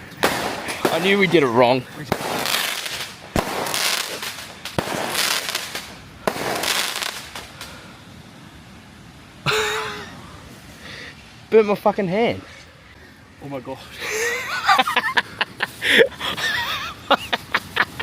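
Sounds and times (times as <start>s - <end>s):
fireworks bangs: 0.0s - 7.8s
whooshing crackling hiss: 0.0s - 18.0s.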